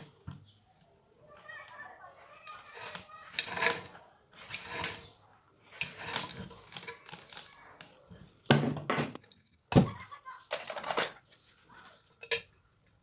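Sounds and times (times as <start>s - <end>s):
metal fan parts clinking: 12.1s - 12.6s.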